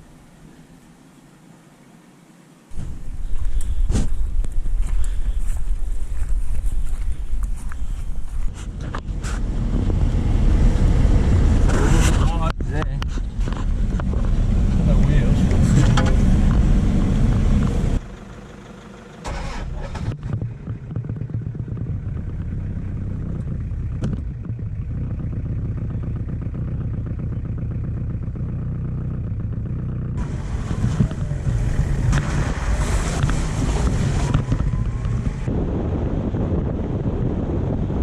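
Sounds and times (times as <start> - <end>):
wind noise on microphone: 2.7 - 18.0, 30.2 - 38.0
engine running: 2.7 - 38.0.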